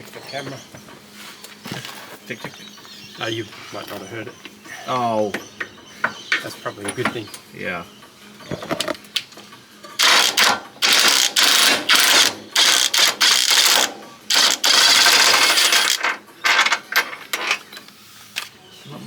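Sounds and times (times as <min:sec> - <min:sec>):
power wrench rattling whirr: 0:10.0 - 0:17.7.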